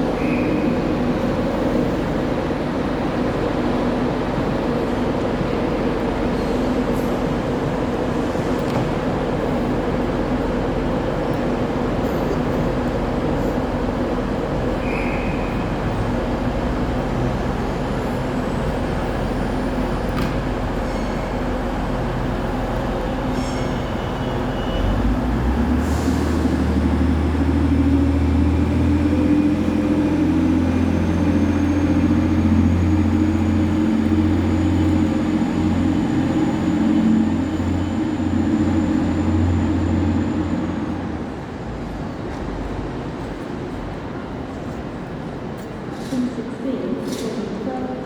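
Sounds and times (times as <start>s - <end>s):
train low hum: 0.0s - 48.0s
faint high whine: 30.7s - 41.6s.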